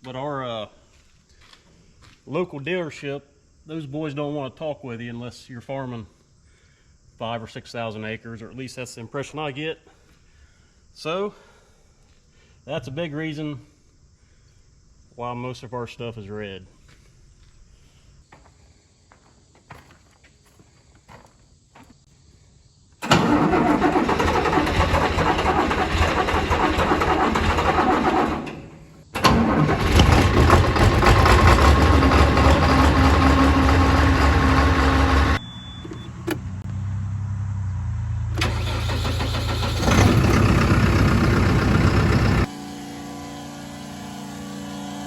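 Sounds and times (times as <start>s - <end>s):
farm machinery engines running: 23.0s - 36.4s, 38.4s - 45.0s.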